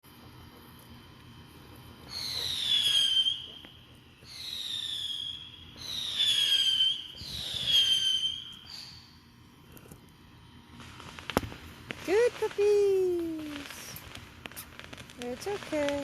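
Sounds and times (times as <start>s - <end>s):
whistling fireworks: 1.8s - 16.0s.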